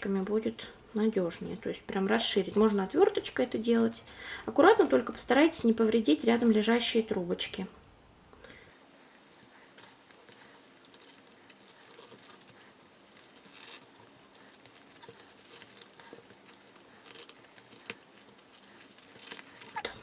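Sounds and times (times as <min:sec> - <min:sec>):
scissor blades scraping paper: 0:10.2 - 0:20.0.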